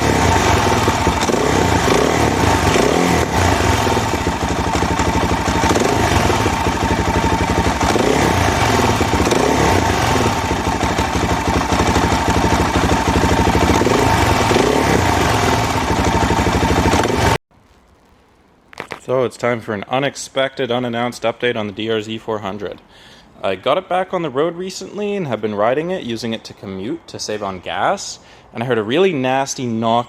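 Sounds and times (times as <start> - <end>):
motorcycle engine running: 0.0 - 17.4.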